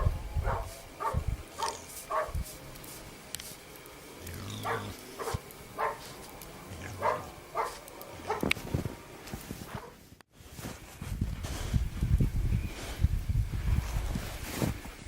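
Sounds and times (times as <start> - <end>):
dog barking: 0.0 - 2.4, 4.6 - 6.2, 7.0 - 8.5, 9.7 - 10.0.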